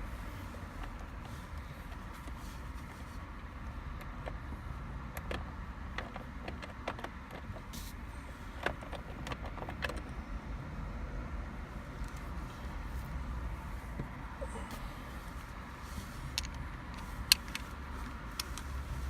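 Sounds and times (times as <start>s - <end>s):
hand tools clicking on plastic trim: 3.9s - 7.7s
steady low rumble: 10.0s - 19.0s.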